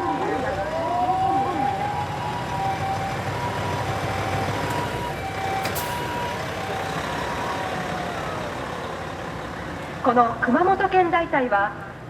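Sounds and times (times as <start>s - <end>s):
two-tone ambulance siren: 0.0s - 10.1s
heavy vehicle engines rumbling: 0.0s - 12.0s.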